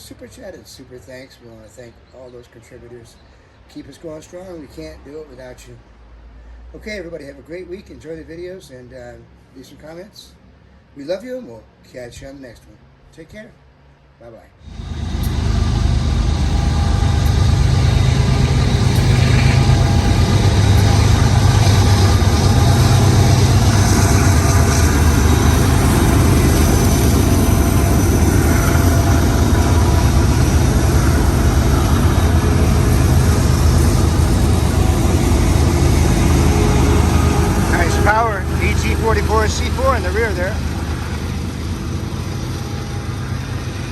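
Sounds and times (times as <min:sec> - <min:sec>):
diesel locomotive engine humming: 0:14.6 - 0:43.9
train cars rolling on rails: 0:14.7 - 0:43.9.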